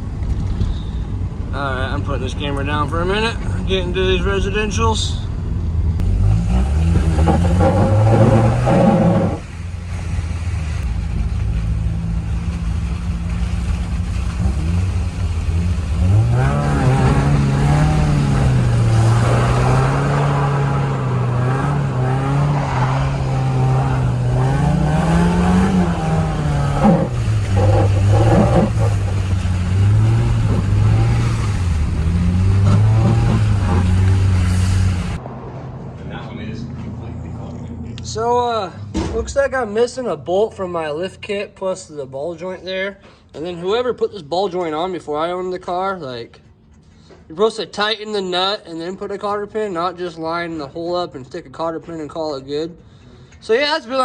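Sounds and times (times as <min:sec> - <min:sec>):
car engine running: 0:00.0 - 0:35.2
road noise: 0:00.0 - 0:54.0.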